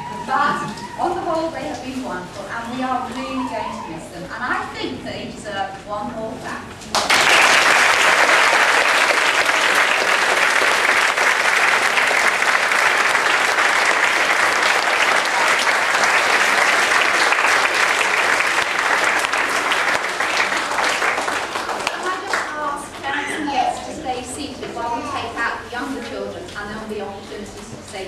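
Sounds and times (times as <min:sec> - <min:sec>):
audience applauding: 0:06.9 - 0:22.7.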